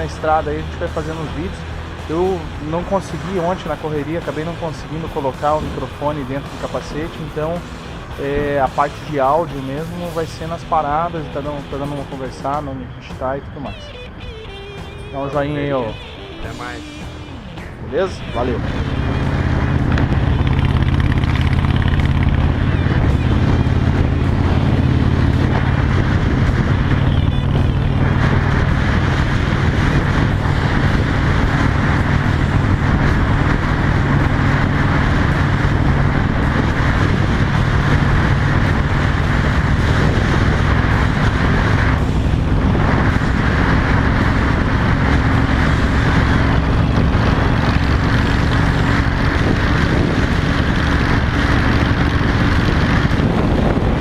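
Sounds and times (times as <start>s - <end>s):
wind noise: 0.0s - 54.0s
motorcycle engine running: 13.7s - 54.0s.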